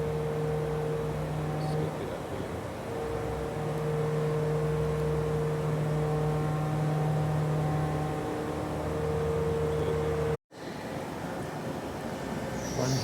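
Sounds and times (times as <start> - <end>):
milling machine hum: 0.0 - 10.4
spindle whine: 0.0 - 10.4.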